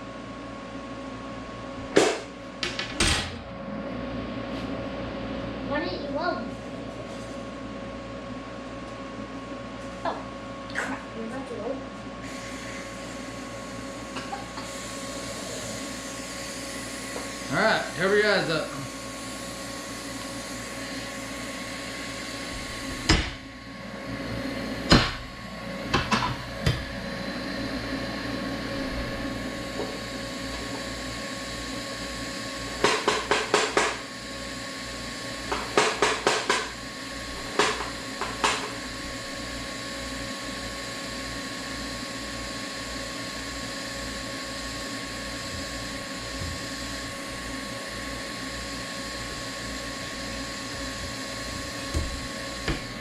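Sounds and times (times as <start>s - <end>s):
welder humming: 12.2s - 53.0s.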